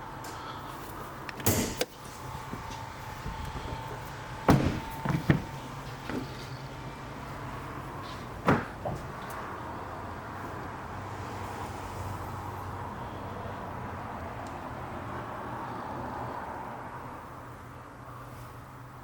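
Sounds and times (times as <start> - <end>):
steady low hum: 0.0 - 14.0
car doors opening and shutting: 1.3 - 9.5.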